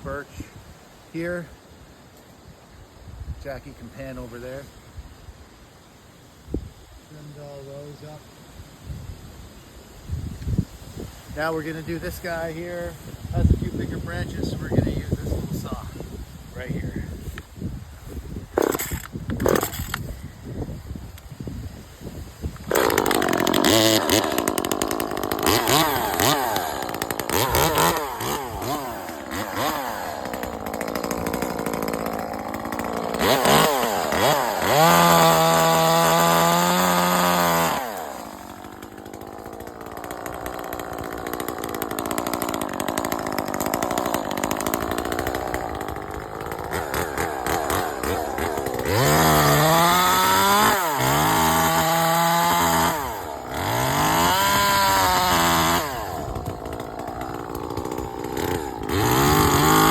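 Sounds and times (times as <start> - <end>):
chainsaw revving: 18.6 - 20.1, 22.6 - 59.9.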